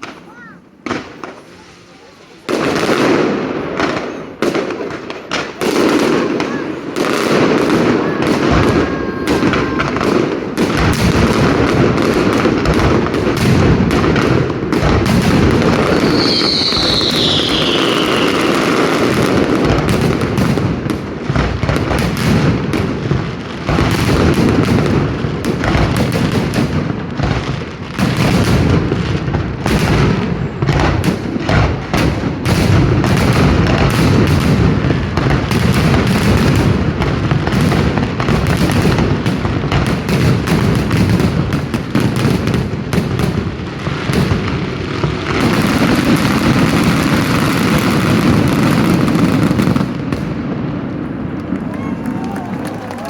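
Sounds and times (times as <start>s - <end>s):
fireworks bangs and crackling: 0.0s - 53.0s
descending firework whistle: 6.4s - 10.4s, 15.6s - 19.8s.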